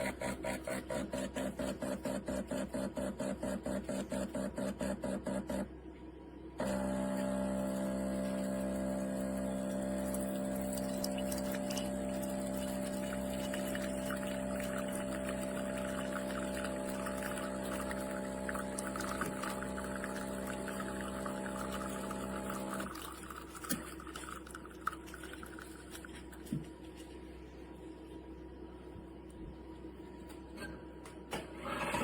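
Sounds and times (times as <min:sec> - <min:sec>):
espresso machine pump pulsing: 0:06.6 - 0:26.3
liquid spluttering trickle: 0:09.8 - 0:26.5.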